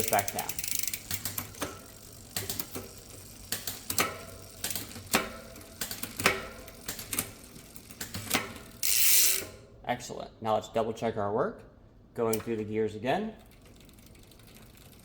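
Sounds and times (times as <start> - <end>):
bicycle gears shifting clicks: 0.0 - 9.6, 13.4 - 15.0.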